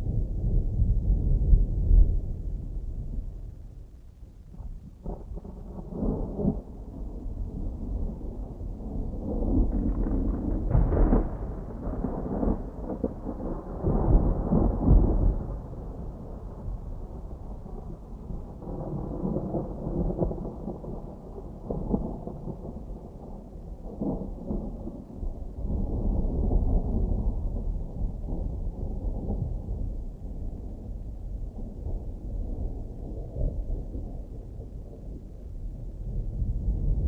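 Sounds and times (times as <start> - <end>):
distant thunder rumbling: 0.0 - 3.9, 4.5 - 37.0.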